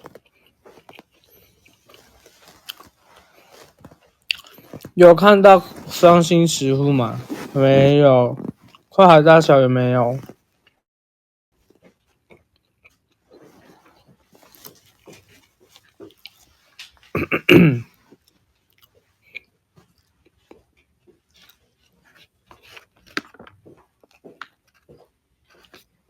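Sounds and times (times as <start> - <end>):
mouth clicks and chewing noises: 0.0 - 5.0, 11.7 - 17.4, 18.1 - 26.0
man coughing: 17.2 - 17.9.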